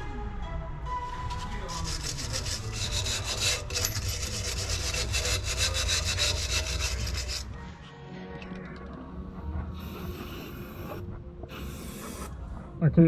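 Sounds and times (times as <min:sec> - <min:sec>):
brush scrubbing metal: 0:01.2 - 0:07.6.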